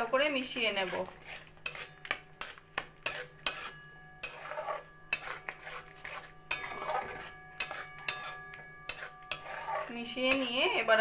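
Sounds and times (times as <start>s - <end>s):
spatula scraping a pan: 0.0s - 11.0s
faint metallic ring: 3.4s - 5.2s, 6.5s - 10.9s.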